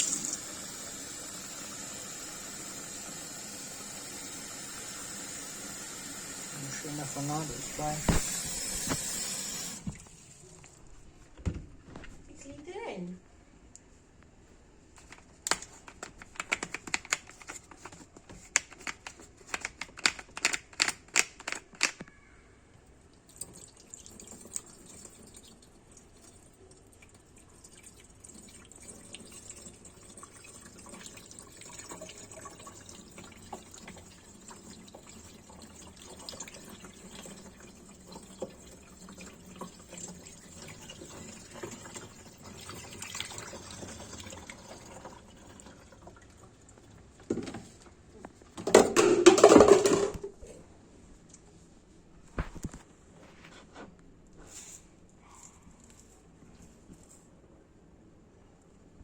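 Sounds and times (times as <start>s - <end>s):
water pouring into tank: 0.0s - 10.6s, 23.2s - 47.1s.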